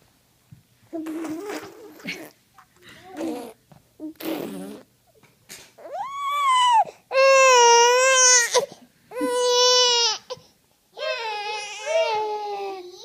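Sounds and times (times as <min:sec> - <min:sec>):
baby vocalizing: 0:01.0 - 0:02.4, 0:03.0 - 0:04.9.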